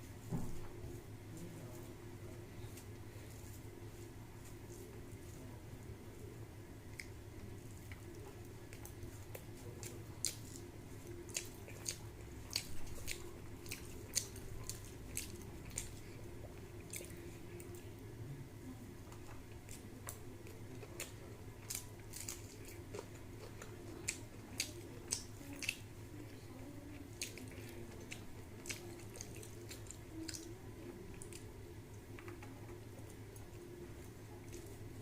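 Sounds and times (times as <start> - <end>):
steady low hum: 0.0 - 35.0
wet chewing smacks: 6.9 - 18.0, 19.1 - 35.0.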